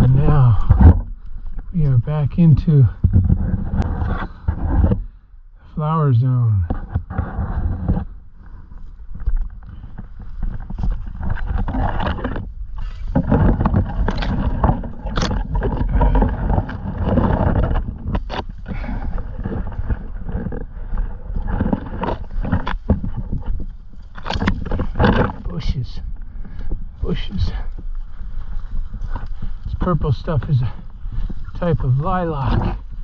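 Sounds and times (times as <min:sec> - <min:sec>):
wind buffeting microphone: 0:00.0 - 0:05.1.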